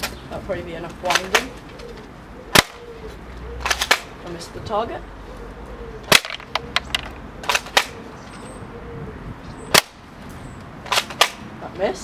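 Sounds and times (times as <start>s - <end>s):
airsoft rifle mechanical clacks: 3.6s - 4.1s, 6.1s - 8.0s, 10.8s - 11.4s.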